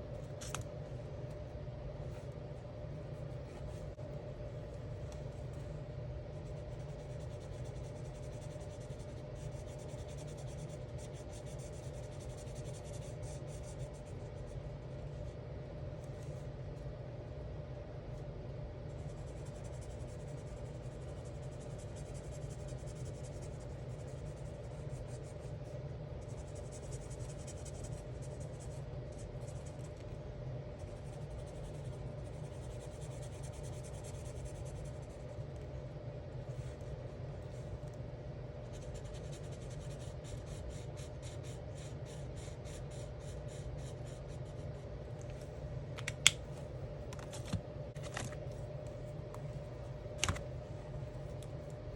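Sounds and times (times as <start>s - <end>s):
steady low hum: 0.0s - 51.9s
marker scratching on paper: 6.3s - 15.2s, 18.9s - 25.5s, 38.7s - 44.6s.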